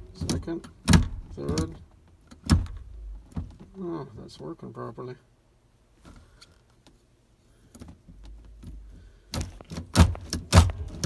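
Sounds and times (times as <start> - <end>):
gear lever metallic clunks: 0.2 - 3.6, 9.4 - 11.0
gear shifter clicks: 7.8 - 11.0.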